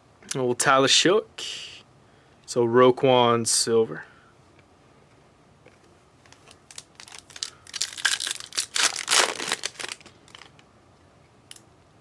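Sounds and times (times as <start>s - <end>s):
foil wrapper tearing and crinkling: 6.3s - 10.6s.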